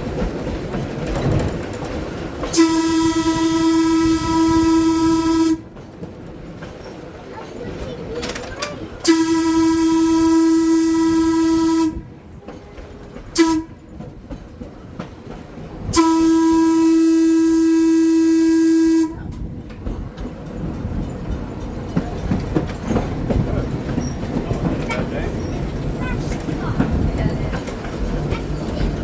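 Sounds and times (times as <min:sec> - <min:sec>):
trolley wheels clattering on rails: 0:00.0 - 0:03.8, 0:04.4 - 0:09.3, 0:19.3 - 0:29.0
trolley horn blasts: 0:02.5 - 0:05.7, 0:09.0 - 0:13.9, 0:15.9 - 0:19.2.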